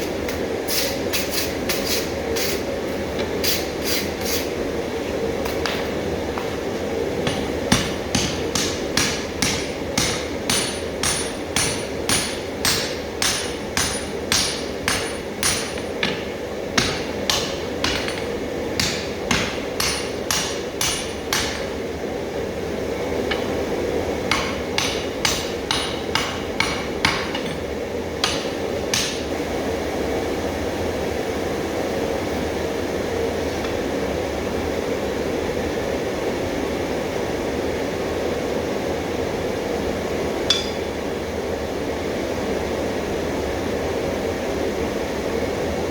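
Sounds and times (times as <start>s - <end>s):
steady hum: 0.0s - 45.9s
hammer striking iron on anvil: 7.2s - 21.8s, 23.1s - 23.7s, 24.3s - 29.3s, 40.5s - 41.1s.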